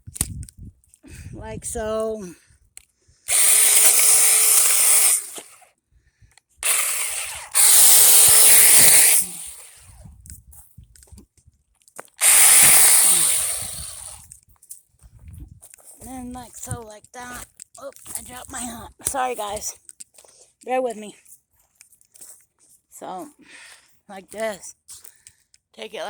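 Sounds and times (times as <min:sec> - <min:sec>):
chainsaw cutting branches: 0:03.3 - 0:05.7, 0:06.6 - 0:10.0, 0:12.2 - 0:14.3.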